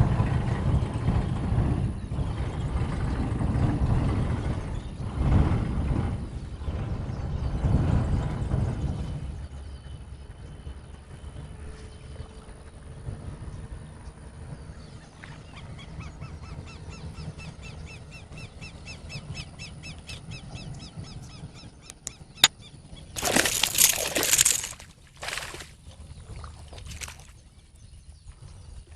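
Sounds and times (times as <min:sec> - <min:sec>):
bird chirping: 0:15.5 - 0:28.8
sharp clicks: 0:21.9 - 0:22.2.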